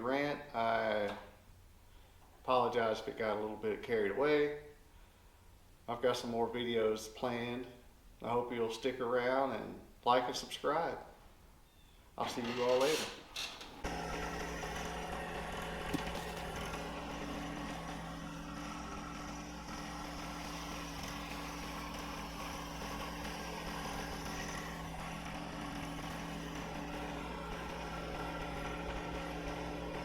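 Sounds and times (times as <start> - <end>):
engine running steadily: 13.8 - 30.0.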